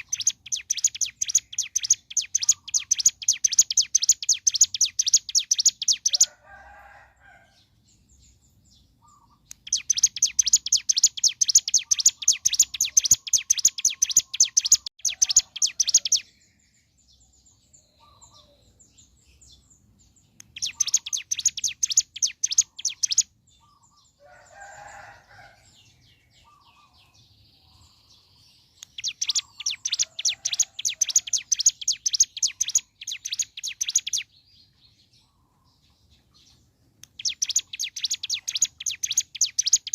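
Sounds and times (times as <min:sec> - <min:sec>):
bird singing rapid trills: 0:00.0 - 0:06.3, 0:08.2 - 0:24.2, 0:26.3 - 0:39.9
softer lower bird chattering: 0:00.0 - 0:06.6, 0:09.0 - 0:16.6, 0:20.3 - 0:39.9.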